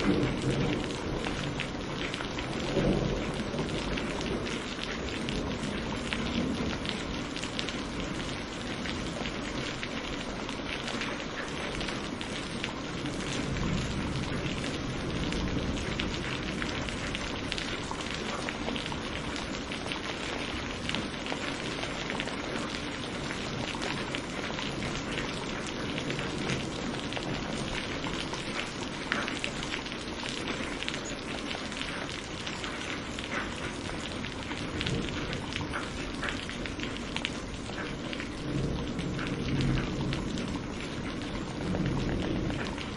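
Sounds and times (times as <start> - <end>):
distant thunder rumble: 0.0 - 9.5, 11.7 - 19.4, 33.3 - 42.9
steady rain: 0.0 - 42.9.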